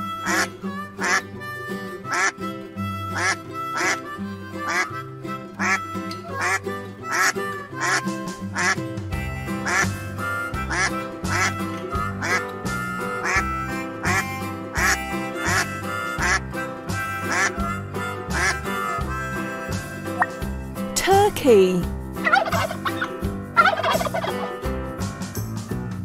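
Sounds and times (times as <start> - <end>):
background music: 0.0 - 26.0
duck quacking: 0.2 - 1.3, 2.1 - 2.4, 3.1 - 4.9, 5.6 - 8.8, 9.6 - 9.9, 12.2 - 12.5, 13.2 - 13.4, 14.0 - 16.4, 17.2 - 20.4.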